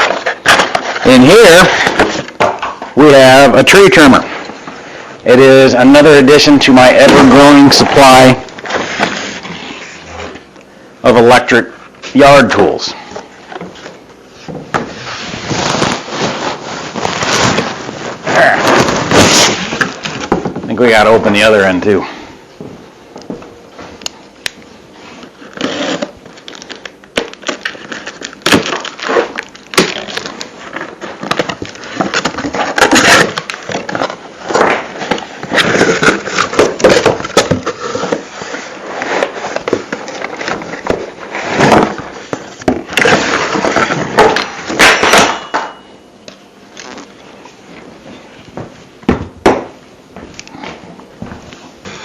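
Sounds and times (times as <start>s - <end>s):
cardboard flaps tearing: 15.3s - 20.1s.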